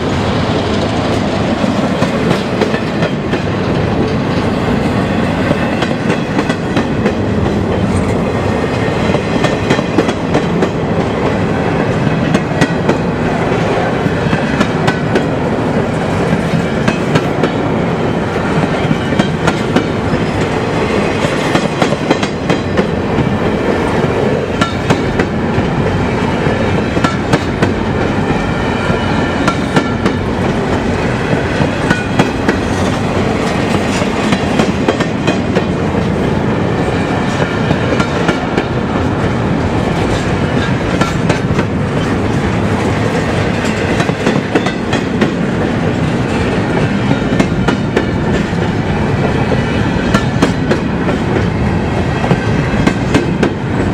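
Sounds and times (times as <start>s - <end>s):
freight train rumble: 0.0s - 53.9s
train wheels clicking over rail joints: 0.0s - 53.9s.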